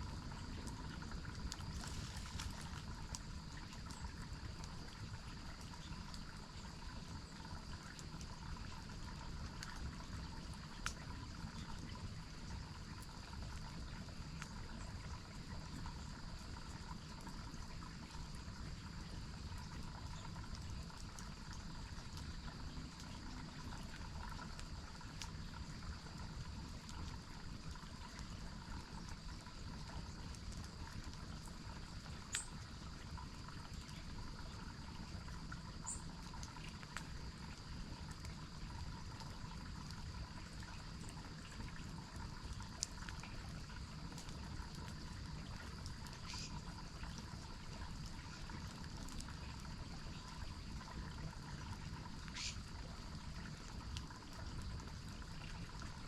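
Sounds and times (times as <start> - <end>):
stream water running: 0.0 - 56.0
high insect drone: 51.8 - 53.2.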